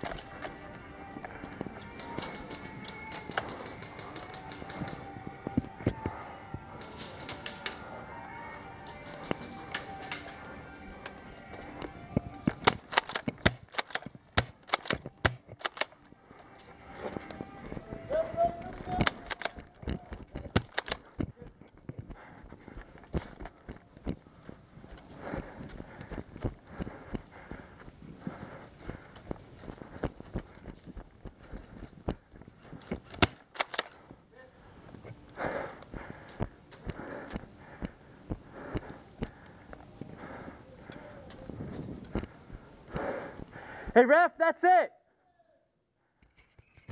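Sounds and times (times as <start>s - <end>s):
footsteps: 0.0s - 44.0s
airsoft guns firing: 12.6s - 15.9s, 18.8s - 19.7s.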